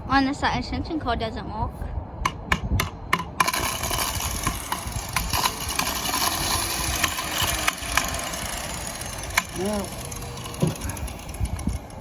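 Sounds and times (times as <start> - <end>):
angle grinder motor running: 3.4 - 12.0.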